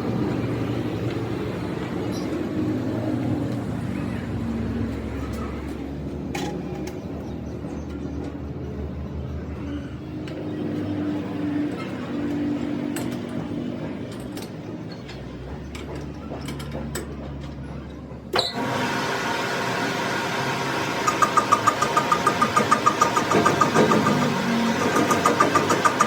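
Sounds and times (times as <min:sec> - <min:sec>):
rough machine running: 0:18.4 - 0:26.0
machine humming: 0:18.5 - 0:26.0.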